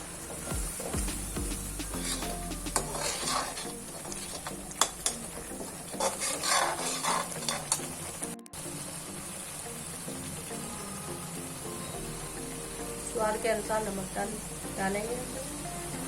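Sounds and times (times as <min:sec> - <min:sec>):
soft sizzle of frying paste: 0:00.0 - 0:16.0
spatula clicking against pan: 0:02.0 - 0:05.3.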